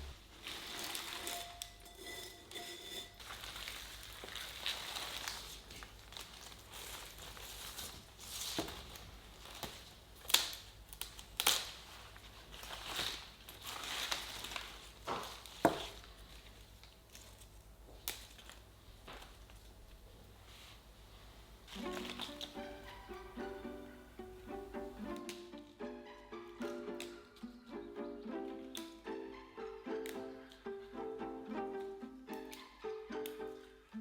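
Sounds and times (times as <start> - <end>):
packaging crinkling and rustling: 0.0 - 20.8, 21.6 - 22.7.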